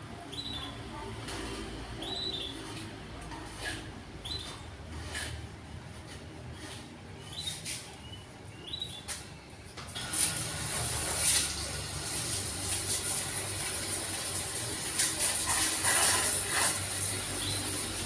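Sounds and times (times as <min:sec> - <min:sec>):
bird chirping: 0:00.3 - 0:00.8, 0:02.0 - 0:02.6, 0:04.2 - 0:04.6, 0:07.2 - 0:09.2.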